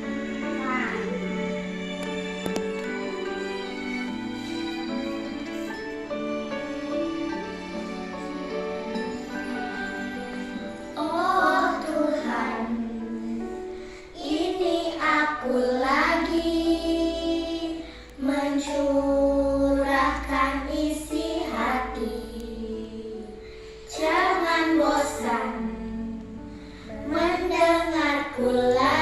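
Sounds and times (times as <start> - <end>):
children singing: 0.0 - 29.0
instrumental backing: 0.0 - 29.0.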